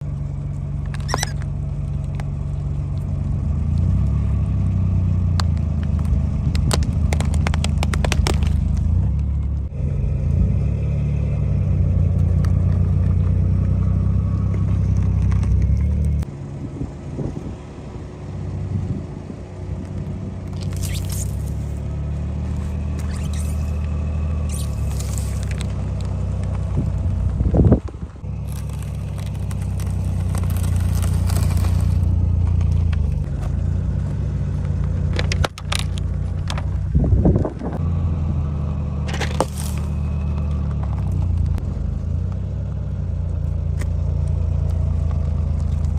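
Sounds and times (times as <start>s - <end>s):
objects crackling under tyres: 0.0s - 16.3s, 19.5s - 37.9s, 38.9s - 45.9s
car engine humming: 0.0s - 45.9s
scraping bursts: 20.5s - 21.8s, 22.4s - 33.5s.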